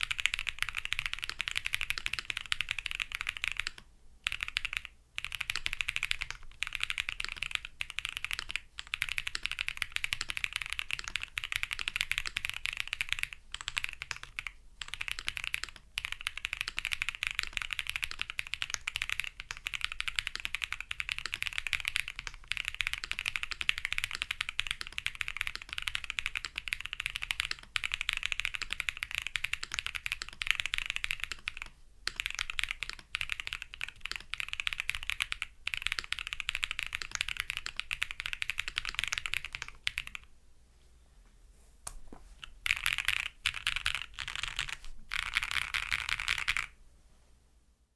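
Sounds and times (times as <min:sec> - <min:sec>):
mechanical keyboard typing: 0:00.0 - 0:40.3, 0:42.4 - 0:46.8.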